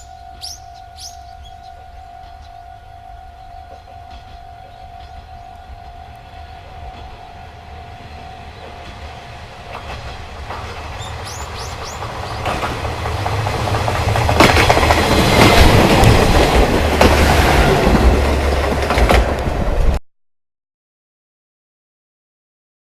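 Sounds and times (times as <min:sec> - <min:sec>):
level crossing alarm tone: 0:00.0 - 0:09.0
diesel train passing: 0:00.0 - 0:20.0
wheels clacking over rail joints: 0:03.7 - 0:20.0.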